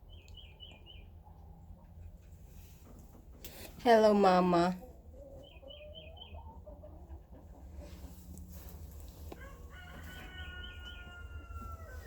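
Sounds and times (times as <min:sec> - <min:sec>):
chicken coop background noise: 0:00.0 - 0:12.0
rooster crowing: 0:09.3 - 0:12.0.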